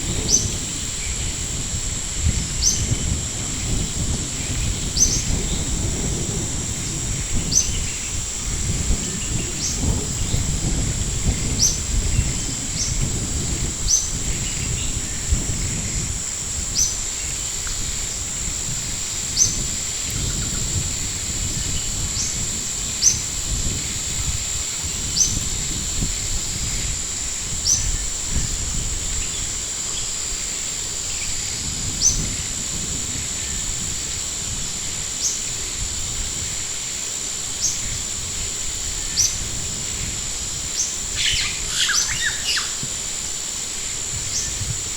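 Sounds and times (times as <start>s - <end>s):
high-pitched whine: 0.0s - 44.9s
wind rumble on microphone: 0.0s - 44.9s
bird chirping: 40.8s - 42.8s.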